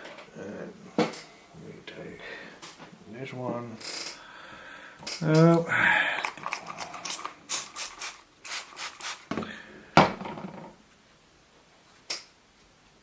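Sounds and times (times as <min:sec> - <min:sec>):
hands rubbing object: 0:06.2 - 0:09.3.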